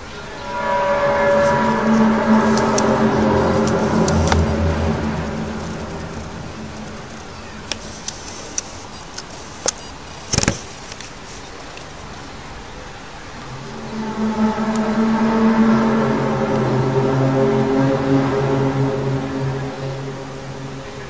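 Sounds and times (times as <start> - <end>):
background rumble: 0.0 - 8.6, 13.2 - 21.0
loud droning hum: 0.0 - 8.6, 13.2 - 21.0.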